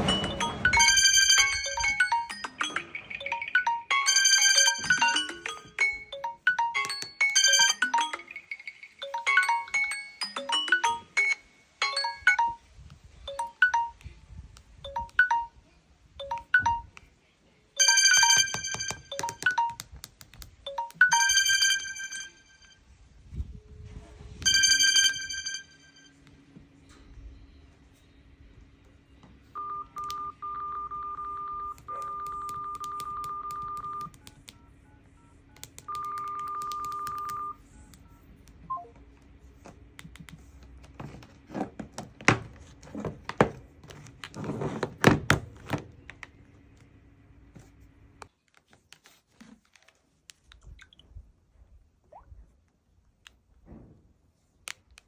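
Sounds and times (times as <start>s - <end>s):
telephone line beep: 0.0s - 12.7s, 13.3s - 14.1s, 14.8s - 15.6s, 16.2s - 17.0s, 17.8s - 19.8s, 20.7s - 22.7s, 24.4s - 26.2s, 29.5s - 39.0s.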